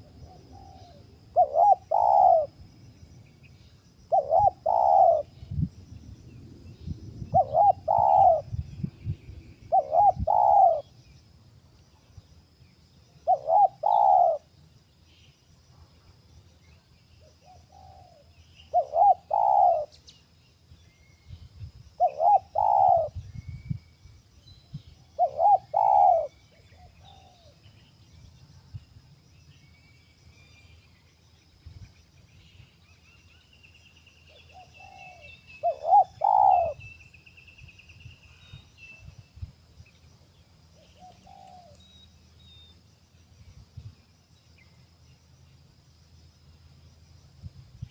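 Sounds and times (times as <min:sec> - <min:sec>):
dove cooing: 0:00.0 - 0:02.6, 0:04.1 - 0:05.3, 0:07.3 - 0:08.6, 0:09.7 - 0:10.9, 0:13.2 - 0:14.5, 0:17.4 - 0:19.9, 0:22.0 - 0:23.2, 0:25.2 - 0:27.6, 0:34.4 - 0:36.8, 0:40.9 - 0:41.8
faint bird chirps: 0:00.0 - 0:45.6.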